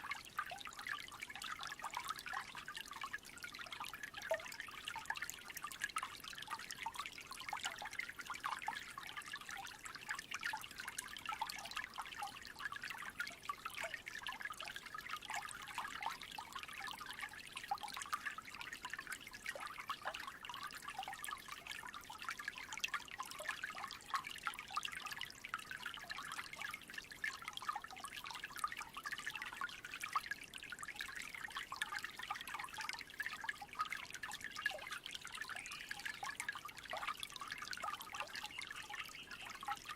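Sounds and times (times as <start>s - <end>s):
creek trickling: 0.0s - 39.9s.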